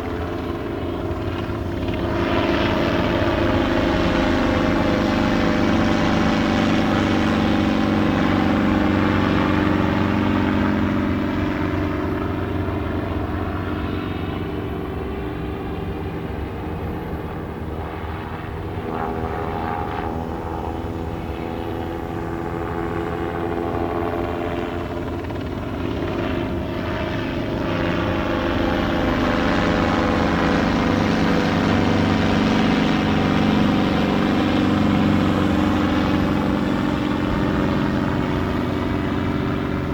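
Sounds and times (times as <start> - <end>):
helicopters circling overhead: 0.0 - 39.9.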